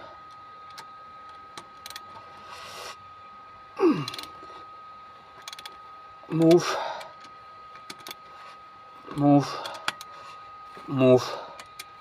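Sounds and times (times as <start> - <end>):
wrench clicking and rasping: 1.8 - 2.0, 4.0 - 4.4, 5.4 - 5.8, 9.2 - 10.1.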